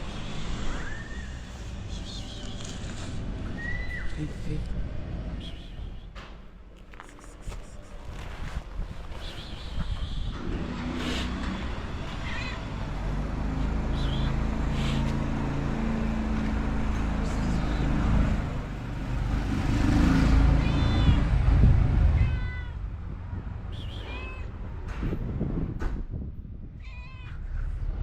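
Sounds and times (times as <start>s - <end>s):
low engine rumble: 0.0s - 28.0s
cat meowing: 12.0s - 12.8s, 20.5s - 21.3s, 22.0s - 22.8s, 24.0s - 24.6s, 26.8s - 27.5s.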